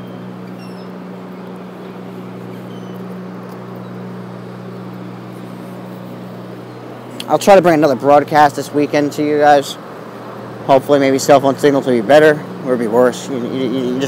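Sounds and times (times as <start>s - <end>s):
faint high chirps: 0.0s - 1.0s
low mechanical hum: 0.0s - 14.0s.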